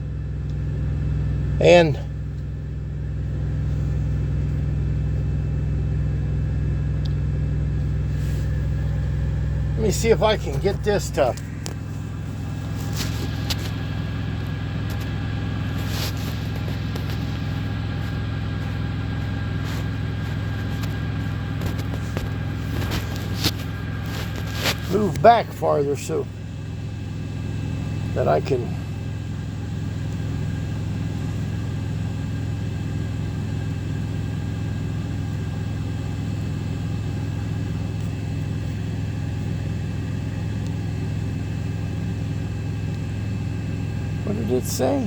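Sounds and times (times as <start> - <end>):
vehicle engine idling hum: 0.0 - 45.0
phone handling clicks and rustles: 10.3 - 18.8, 19.6 - 25.2.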